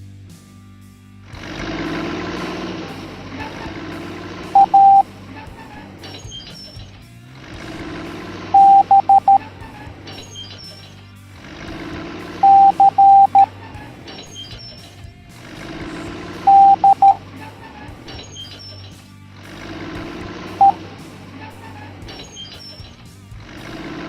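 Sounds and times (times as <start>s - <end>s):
background music: 0.0s - 24.0s
morse code beeps: 4.6s - 5.1s, 8.6s - 9.4s, 12.4s - 13.5s, 16.5s - 17.2s, 20.6s - 20.8s.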